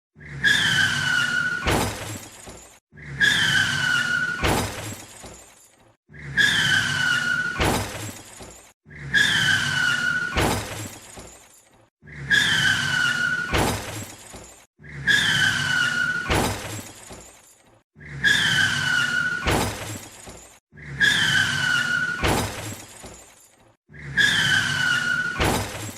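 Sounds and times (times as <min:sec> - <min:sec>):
tyres squealing: 0:00.2 - 0:05.5, 0:06.1 - 0:11.4, 0:12.0 - 0:17.3, 0:18.0 - 0:23.3, 0:23.9 - 0:25.9
car crash with shattering glass: 0:00.7 - 0:02.8, 0:03.5 - 0:05.7, 0:06.8 - 0:08.7, 0:09.4 - 0:11.6, 0:12.6 - 0:14.7, 0:15.3 - 0:17.6, 0:18.6 - 0:20.6, 0:21.2 - 0:23.5, 0:24.5 - 0:25.9.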